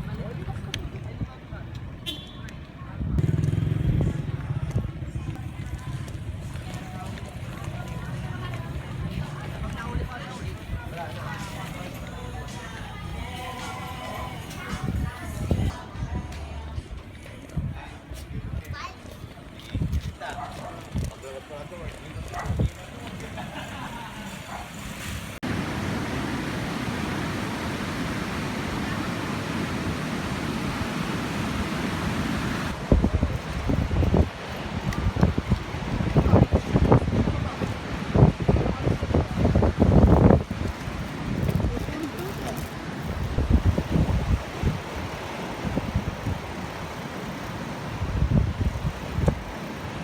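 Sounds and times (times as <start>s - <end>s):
wind buffeting microphone: 14.2s - 18.9s, 19.7s - 23.7s, 25.4s - 50.0s
steady rushing noise: 24.7s - 50.0s.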